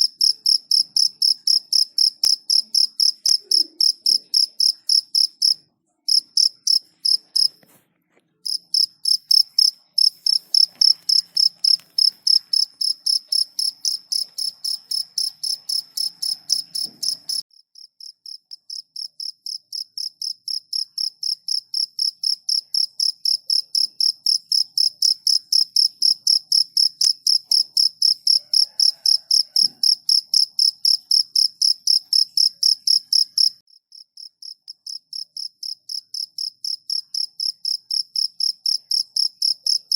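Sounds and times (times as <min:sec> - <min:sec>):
cricket chirping: 0:00.0 - 0:07.5, 0:08.4 - 0:39.9.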